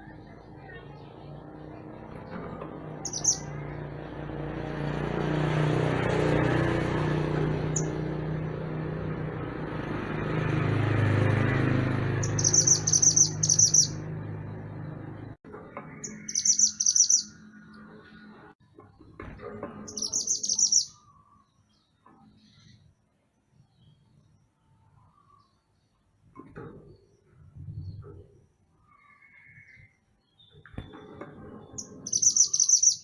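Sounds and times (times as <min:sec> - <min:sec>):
songbird chirping rapidly: 0:03.0 - 0:03.7, 0:07.6 - 0:08.1, 0:12.0 - 0:14.2, 0:15.9 - 0:18.0, 0:19.9 - 0:22.9, 0:31.8 - 0:33.0.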